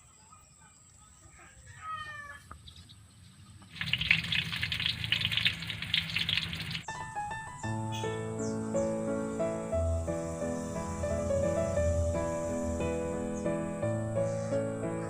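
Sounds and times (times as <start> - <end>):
faint chirping calls: 0.0 - 6.9, 7.5 - 15.0
music: 6.9 - 15.0
loud steady hissing rush: 8.9 - 15.0.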